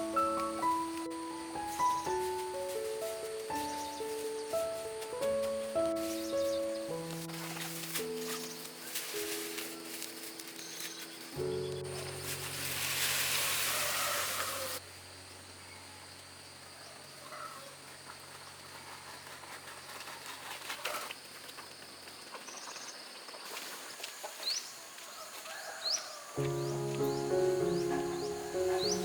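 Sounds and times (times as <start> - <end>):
loud rushing hiss: 11.9 - 14.8.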